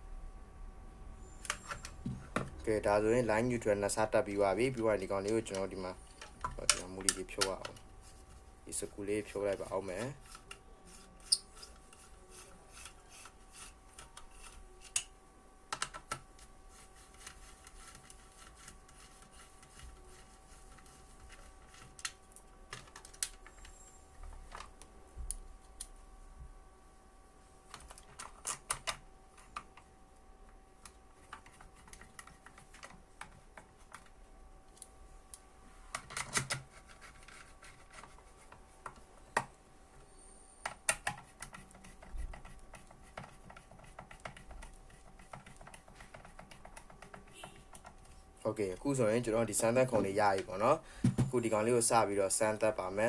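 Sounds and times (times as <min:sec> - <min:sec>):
faint steady hum: 0:00.0 - 0:53.0
hands clicking and tapping parts: 0:04.7 - 0:08.4, 0:15.7 - 0:26.0, 0:27.7 - 0:29.9, 0:30.5 - 0:39.6, 0:40.6 - 0:48.2.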